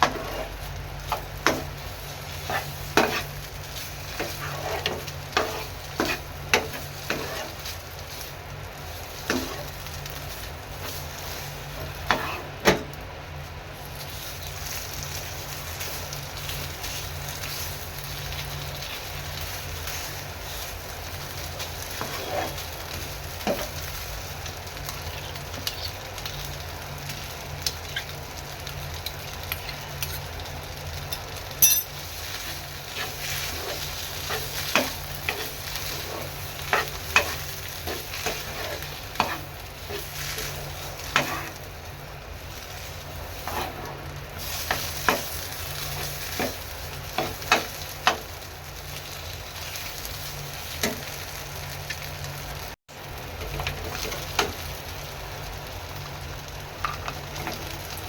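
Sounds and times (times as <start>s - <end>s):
spoon scraping a pan: 0.0s - 1.7s, 2.4s - 3.4s, 4.1s - 7.7s, 11.8s - 12.6s, 22.0s - 22.6s, 31.6s - 41.6s
food sizzling in a pan: 0.0s - 58.0s.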